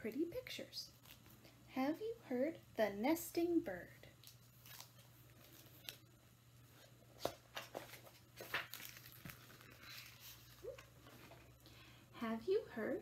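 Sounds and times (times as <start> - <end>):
low room hum: 0.0 - 13.0
book pages rustling: 4.2 - 6.0, 6.7 - 11.4.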